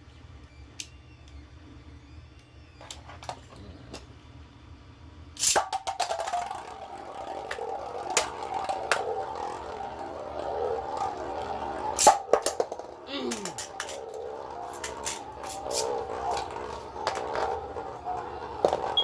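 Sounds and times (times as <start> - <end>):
spinning tops whirring hum: 5.1 - 19.0
spinning tops clattering: 5.4 - 19.0.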